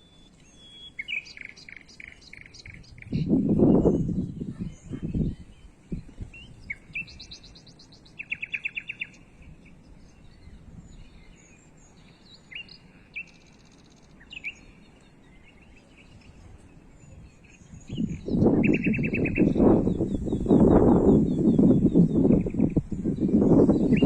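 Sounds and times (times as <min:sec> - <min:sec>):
small songbirds chirping: 0:00.0 - 0:24.0
wind rumble on microphone: 0:02.3 - 0:07.6, 0:08.4 - 0:12.2, 0:15.3 - 0:24.0.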